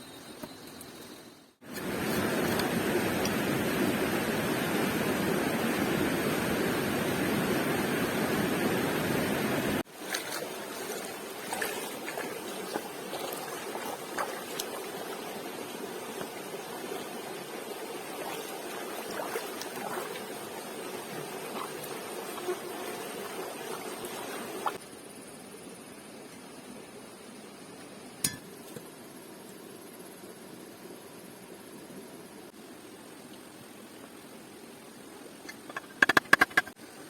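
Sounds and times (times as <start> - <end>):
water rushing: 1.7 - 24.8.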